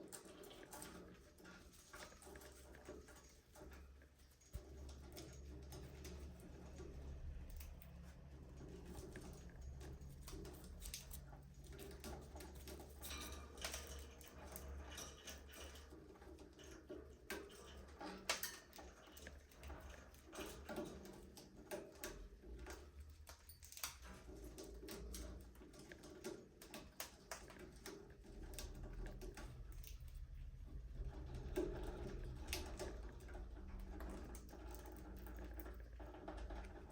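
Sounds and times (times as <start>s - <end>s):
clicks and scratches: 0.0s - 36.9s
low steady hum: 1.4s - 16.2s.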